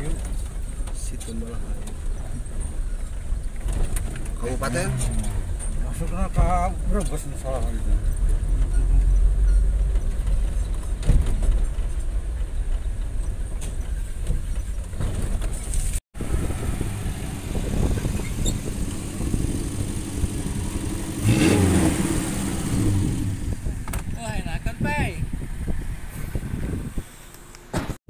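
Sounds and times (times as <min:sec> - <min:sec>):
vehicle engine running: 0:16.2 - 0:24.0.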